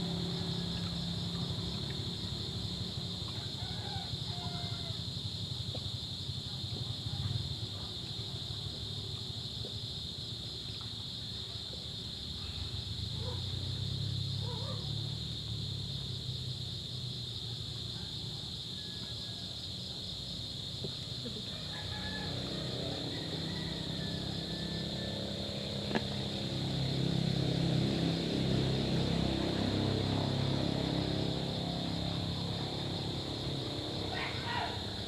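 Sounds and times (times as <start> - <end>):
low engine hum: 0.0 - 9.8, 20.8 - 35.0.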